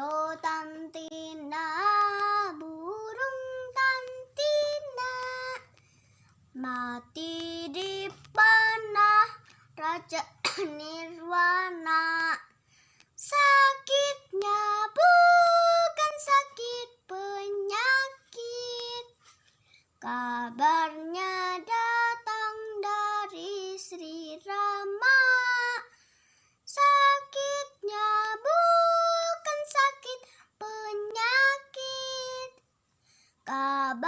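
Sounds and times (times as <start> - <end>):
child singing unaccompanied: 0.0 - 32.7, 33.4 - 34.0
child breathing: 5.7 - 6.5, 12.5 - 13.2, 25.9 - 26.7, 32.9 - 33.5.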